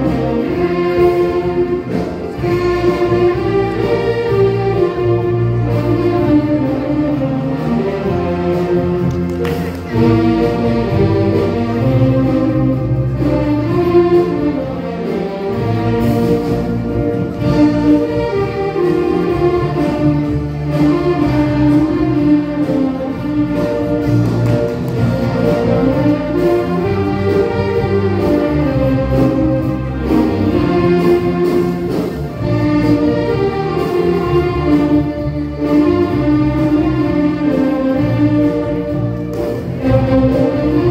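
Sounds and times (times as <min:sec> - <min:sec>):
community band playing: 0:00.0 - 0:40.9.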